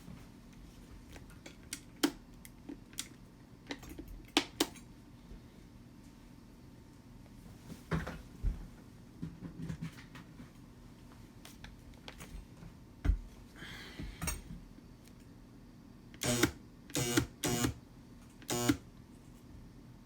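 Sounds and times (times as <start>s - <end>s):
immersion blender motor buzzing: 16.2s - 17.8s, 18.4s - 18.8s.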